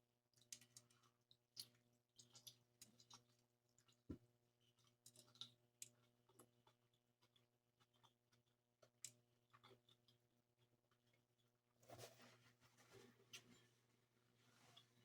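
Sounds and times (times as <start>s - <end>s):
person chewing: 4.7s - 10.2s.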